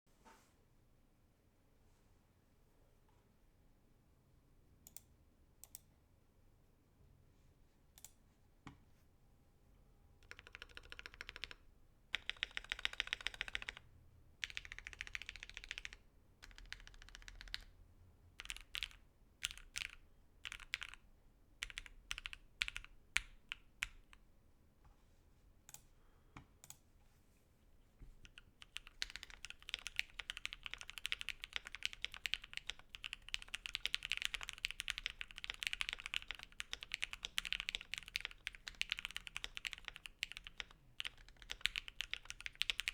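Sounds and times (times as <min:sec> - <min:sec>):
mechanical keyboard typing: 0:10.2 - 0:13.8, 0:14.4 - 0:17.8, 0:18.4 - 0:21.0, 0:21.6 - 0:24.2, 0:28.2 - 0:42.9.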